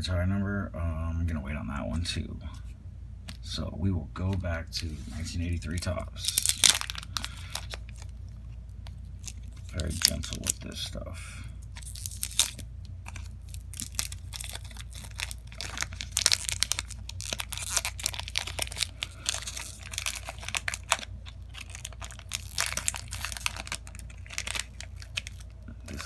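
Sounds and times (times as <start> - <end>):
wrapper crinkling: 5.7 - 10.7, 11.6 - 26.0
wax paper wrapper tearing: 5.8 - 8.3, 8.9 - 10.7, 11.6 - 26.0.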